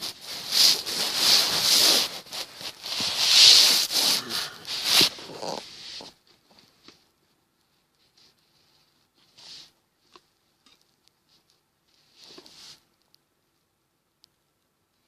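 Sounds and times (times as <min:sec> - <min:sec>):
rustling and scraping: 0:00.0 - 0:13.1.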